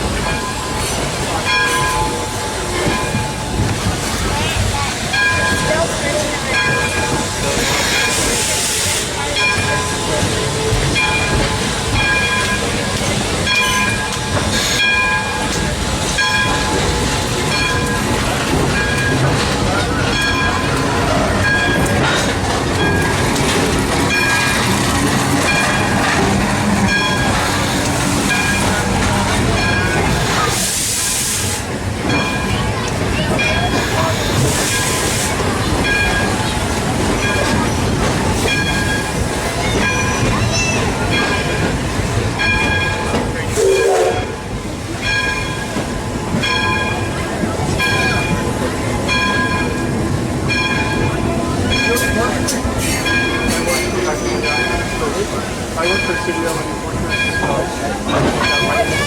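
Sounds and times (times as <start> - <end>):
train cars rumbling: 0.0 - 59.0
steam hiss: 6.6 - 11.9, 26.6 - 31.9, 33.7 - 35.5.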